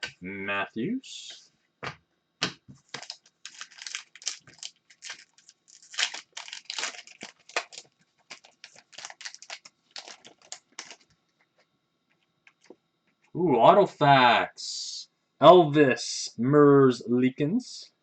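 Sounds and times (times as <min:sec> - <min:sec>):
wrappers crinkling and rustling: 0:02.8 - 0:11.1.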